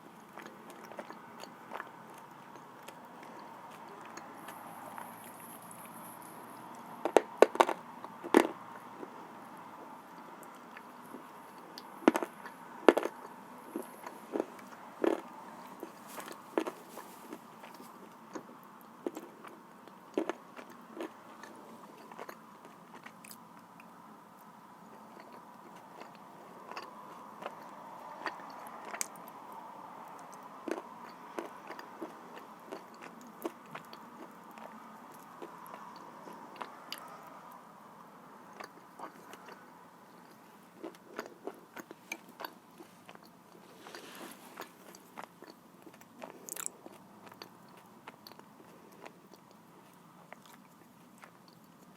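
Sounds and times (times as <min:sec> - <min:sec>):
biting and chewing clay: 0:00.2 - 0:09.2, 0:10.1 - 0:24.0, 0:24.9 - 0:37.4, 0:38.5 - 0:51.9.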